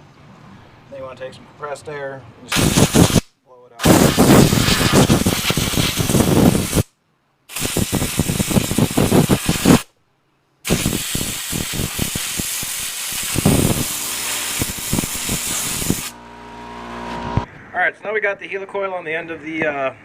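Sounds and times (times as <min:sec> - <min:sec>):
compressed air blowgun hissing: 0:02.5 - 0:06.9, 0:07.5 - 0:09.9, 0:10.6 - 0:16.2.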